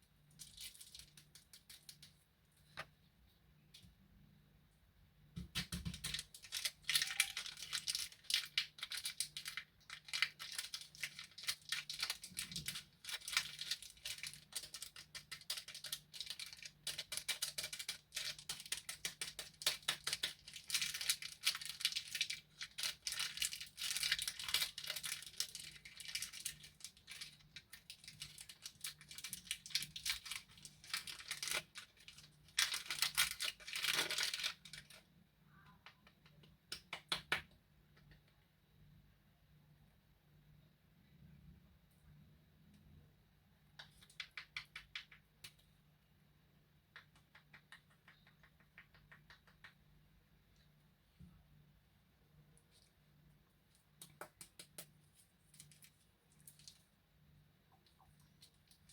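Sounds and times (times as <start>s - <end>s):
plastic wrappers crinkling: 0.3s - 2.2s, 5.9s - 35.0s, 54.0s - 56.9s.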